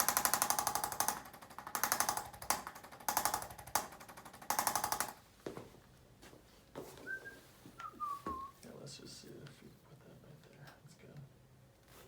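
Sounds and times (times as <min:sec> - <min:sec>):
percussive massage device tapping: 0:00.0 - 0:05.2.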